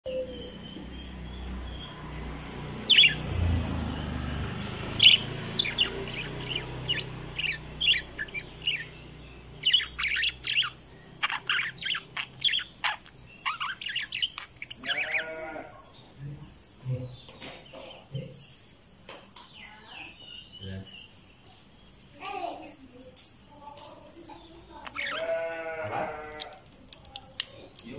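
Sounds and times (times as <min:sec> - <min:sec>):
parakeets chirping: 0:00.1 - 0:18.6, 0:24.3 - 0:27.9.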